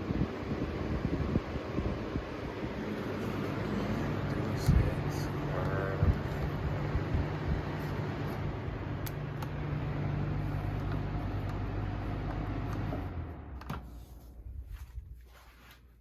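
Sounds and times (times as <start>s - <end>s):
box fans running: 0.0s - 16.0s
fan switch click: 9.0s - 9.6s.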